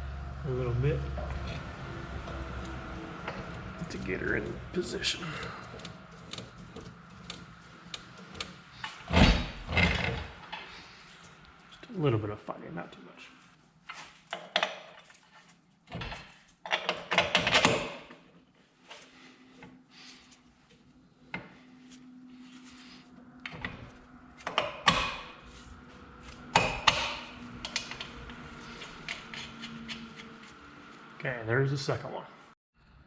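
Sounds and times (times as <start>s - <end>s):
metal clanks and scrapes: 1.2s - 10.8s, 23.4s - 31.2s.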